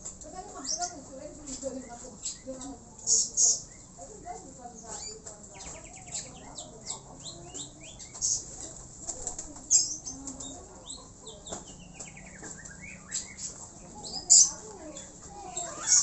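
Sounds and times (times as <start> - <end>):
small birds chirping: 0.0 - 16.0
pigeon wings flapping: 8.5 - 9.7.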